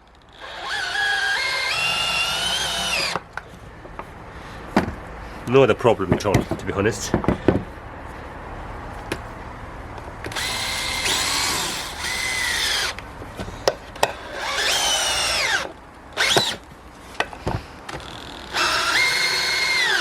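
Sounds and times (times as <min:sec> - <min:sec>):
drill clicks: 0:00.1 - 0:03.5, 0:10.2 - 0:20.0
cordless drill driving screw into wood: 0:00.3 - 0:03.3, 0:10.3 - 0:13.0, 0:14.0 - 0:16.6, 0:17.9 - 0:20.0.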